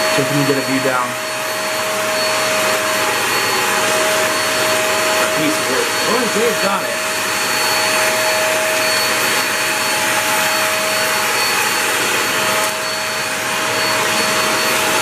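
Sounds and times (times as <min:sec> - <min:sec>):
stick vacuum running: 0:00.0 - 0:15.0.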